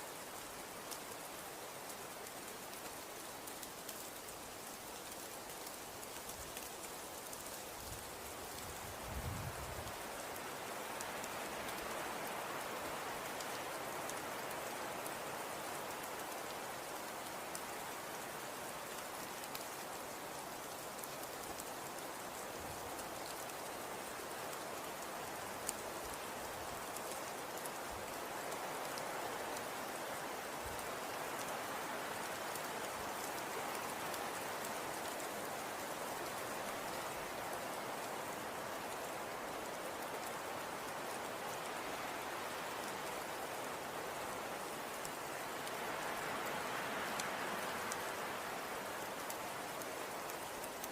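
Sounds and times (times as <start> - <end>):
faint ticks: 0.4 - 50.9
wind and blowing snow: 5.0 - 19.9.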